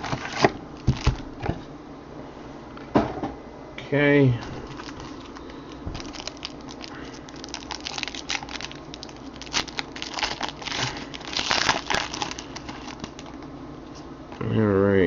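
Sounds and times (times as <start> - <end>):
wrapper crinkling and tearing: 0.0 - 1.2, 4.4 - 13.5.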